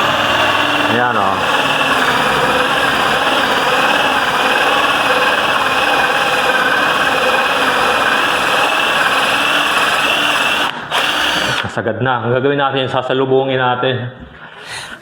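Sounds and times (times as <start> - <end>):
electric drill boring into wood: 0.0 - 11.8.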